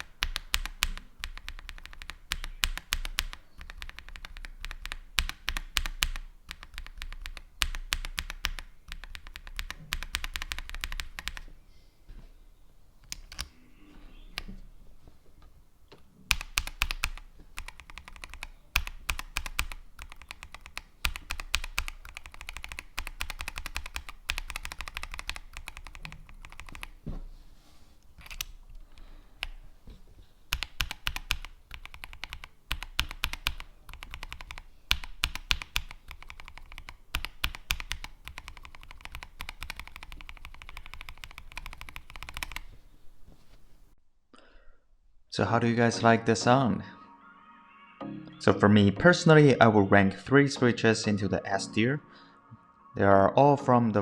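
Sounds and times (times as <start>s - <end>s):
mechanical keyboard typing: 0.0s - 11.5s, 13.1s - 13.5s, 16.3s - 27.0s, 28.2s - 29.6s, 30.5s - 42.7s.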